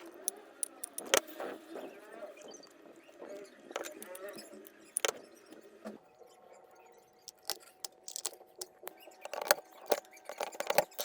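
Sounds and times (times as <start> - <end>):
clicks of small hard parts: 0.0 - 1.3, 3.8 - 5.2, 7.3 - 11.0.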